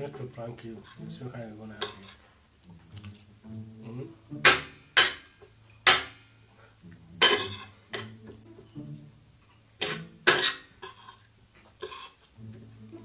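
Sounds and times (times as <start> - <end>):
spoon scraping a plate: 7.2 - 8.1, 9.8 - 12.3.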